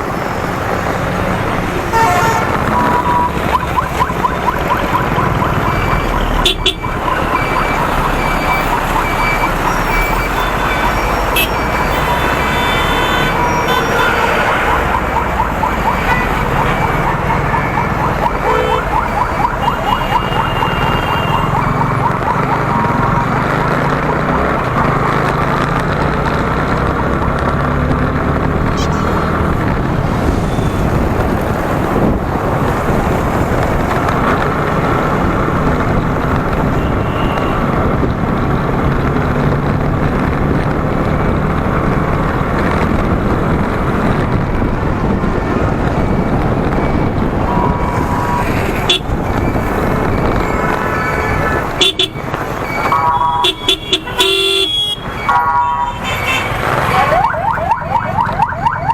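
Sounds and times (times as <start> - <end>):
road traffic: 0.0 - 58.9
wind rush on microphone: 21.6 - 53.1.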